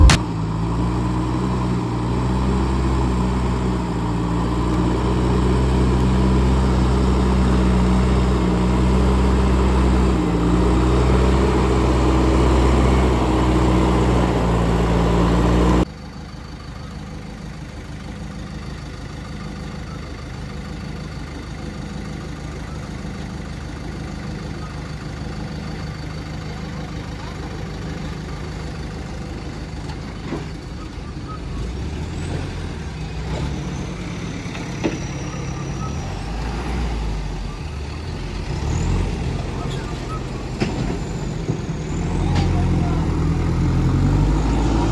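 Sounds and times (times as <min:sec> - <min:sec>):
distant engine hum: 0:00.0 - 0:00.9
heavy diesel engine droning: 0:00.0 - 0:44.9.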